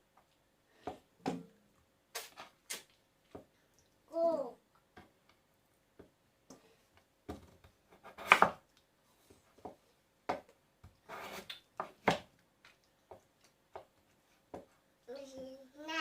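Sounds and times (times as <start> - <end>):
objects tapping and knocking: 9.2 - 14.8.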